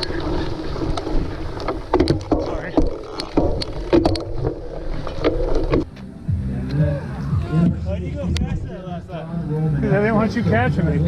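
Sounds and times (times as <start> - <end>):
bike rattling over rough ground: 0.0 - 6.0.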